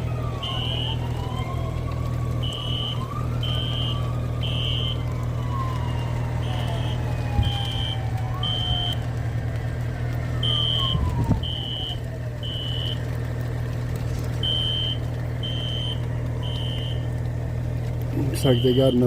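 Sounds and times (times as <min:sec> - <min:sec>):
fire alarm beeps: 0:00.4 - 0:01.0, 0:02.4 - 0:05.0, 0:06.4 - 0:09.0, 0:10.4 - 0:13.0, 0:14.4 - 0:17.1, 0:18.4 - 0:19.0.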